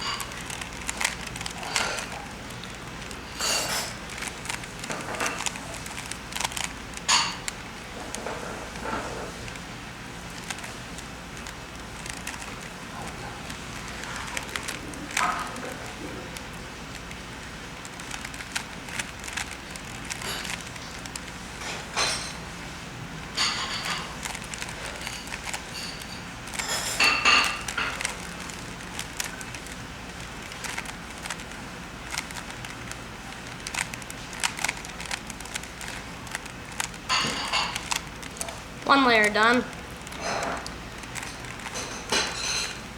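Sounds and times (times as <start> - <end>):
plastic puzzle cube clicking: 0.2 - 3.2, 3.8 - 7.7, 10.3 - 15.2, 17.8 - 21.4, 24.1 - 26.6, 27.5 - 37.1, 37.7 - 41.7.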